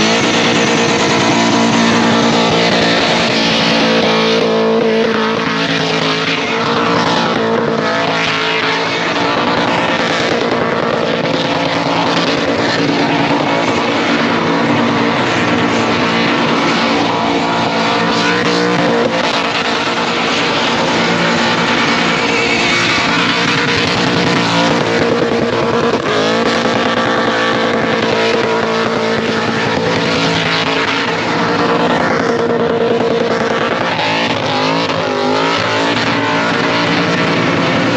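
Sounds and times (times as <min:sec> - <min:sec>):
car engine at high revs: 0:00.0 - 0:37.9
supercharger whine: 0:00.0 - 0:37.9.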